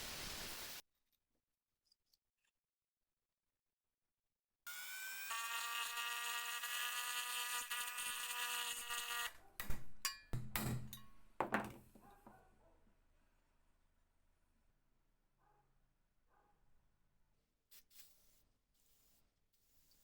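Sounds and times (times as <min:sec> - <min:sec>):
small motor tool running: 0:04.7 - 0:09.4.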